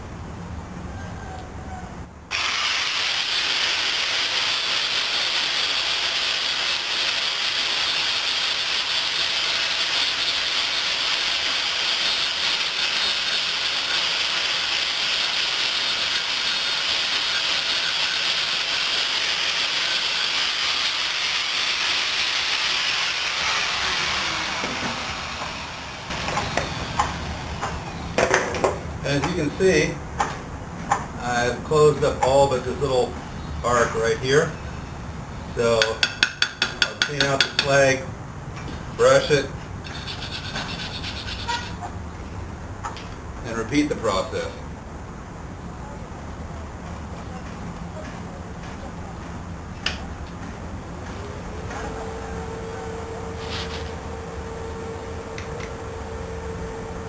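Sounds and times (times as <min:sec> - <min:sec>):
welding arc crackling and hissing: 0:02.3 - 0:27.7, 0:39.2 - 0:41.8, 0:53.4 - 0:54.0.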